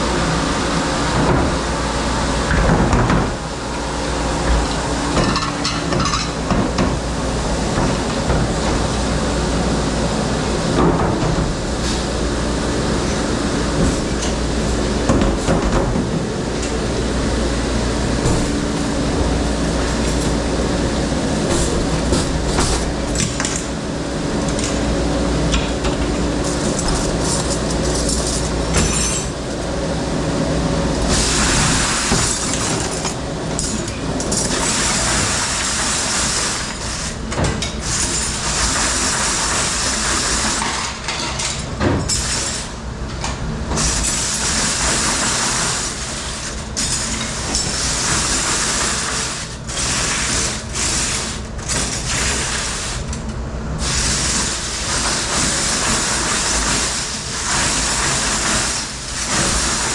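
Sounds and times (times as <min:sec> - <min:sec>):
dishwashing machine noise: 0:00.0 - 0:59.9
dishes and glassware clattering: 0:05.2 - 0:06.6, 0:26.8 - 0:29.4
rushing water spray: 0:53.8 - 0:59.9.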